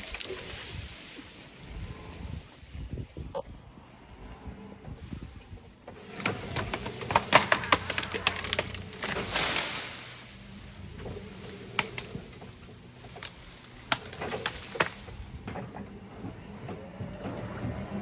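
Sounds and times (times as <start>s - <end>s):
branches snapping: 0.0s - 0.9s, 6.0s - 15.9s
low engine hum: 0.8s - 18.0s
tree crashing down: 6.0s - 15.8s
wood cracking: 6.0s - 16.0s.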